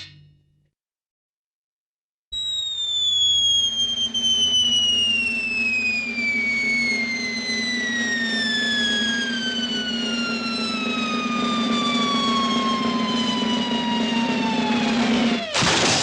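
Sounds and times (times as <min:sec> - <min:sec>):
falling bomb whistle: 0:02.3 - 0:16.0
noisy crash: 0:15.5 - 0:16.0.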